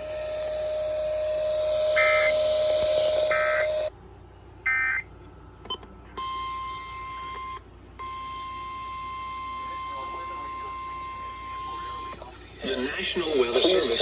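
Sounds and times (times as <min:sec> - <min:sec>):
hum and static: 0:00.0 - 0:14.0
warbling electronic data bursts: 0:01.4 - 0:03.9.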